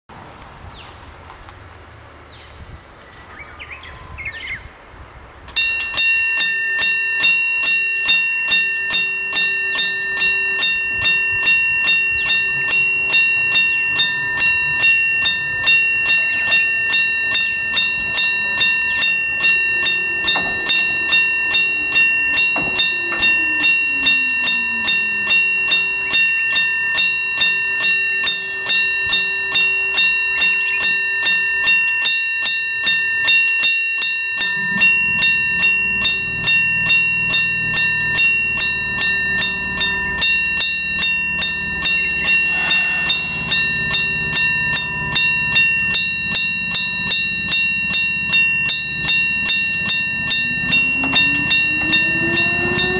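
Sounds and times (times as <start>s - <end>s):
level crossing warning bell: 5.5s - 52.9s.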